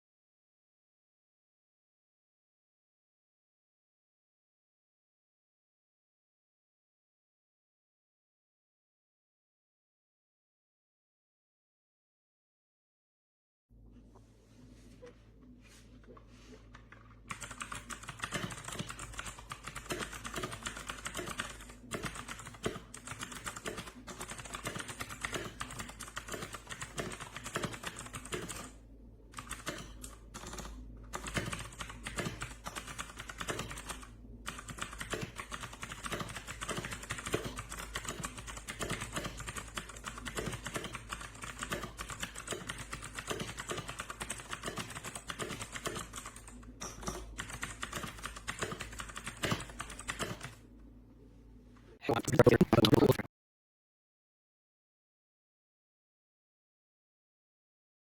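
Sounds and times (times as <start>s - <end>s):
fast typing on mechanical keyboard: 16.9s - 50.6s.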